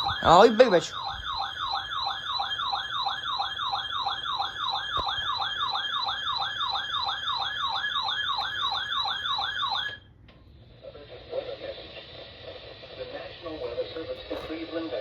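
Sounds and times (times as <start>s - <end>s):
weather radio alert siren tone: 0.0s - 10.0s.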